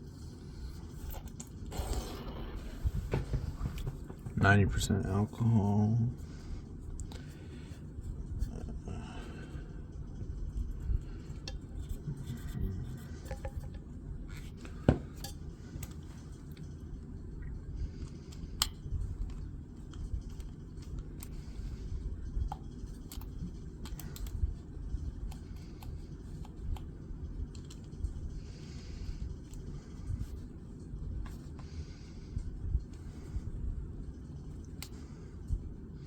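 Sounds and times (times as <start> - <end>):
low handling rumble: 1.7 - 14.3
flashlight parts clicking and tapping: 27.5 - 28.0.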